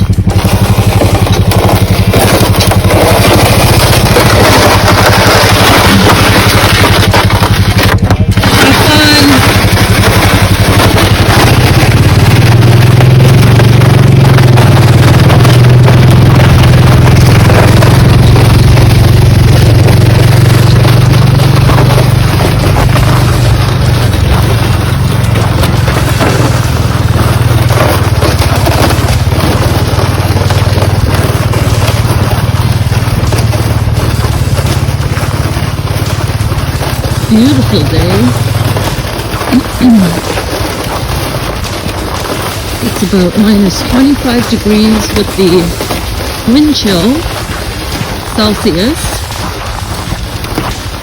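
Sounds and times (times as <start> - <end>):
vehicle engine running: 0.0 - 51.0.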